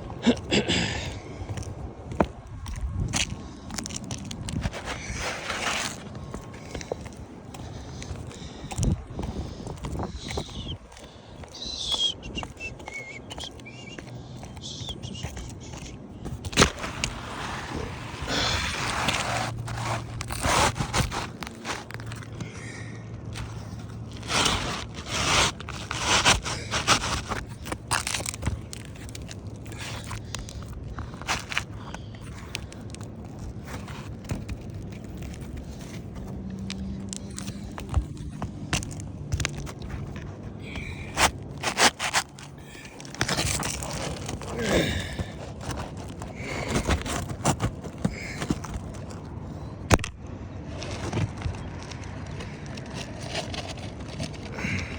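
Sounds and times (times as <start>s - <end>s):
scraping on roof shingles: 0.0s - 54.9s
light clicks and rustles: 18.8s - 54.9s.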